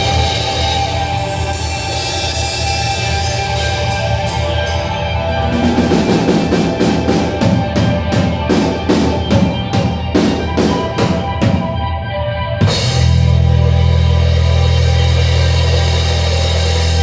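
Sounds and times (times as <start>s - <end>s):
sustained instrumental music: 0.0s - 17.0s
fast drum beat: 5.5s - 11.8s
steady low bass: 12.6s - 17.0s.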